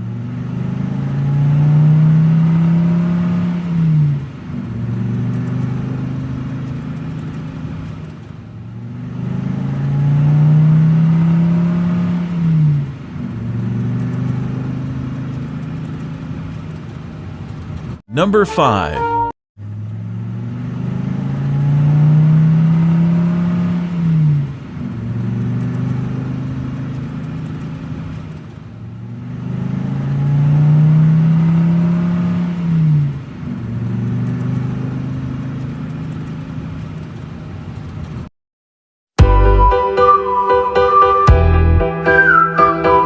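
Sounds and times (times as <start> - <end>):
minibus engine revving: 8.8 - 16.5.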